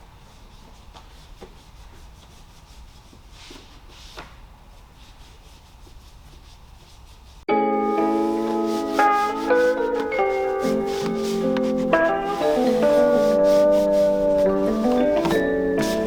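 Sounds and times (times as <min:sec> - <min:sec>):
scrubbing strokes: 0:00.1 - 0:07.4, 0:08.0 - 0:16.0.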